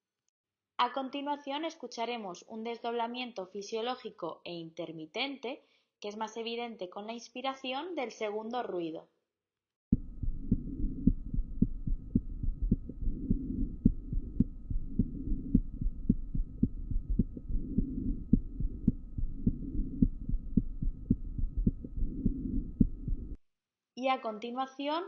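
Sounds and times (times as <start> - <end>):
heartbeat through stethoscope: 9.9 - 23.4.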